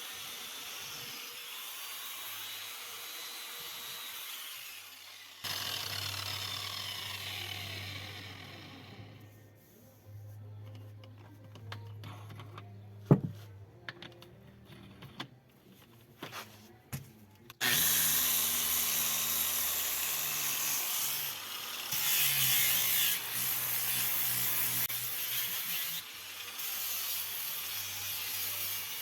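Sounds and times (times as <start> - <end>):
angle grinder polishing stone: 17.6 - 29.0.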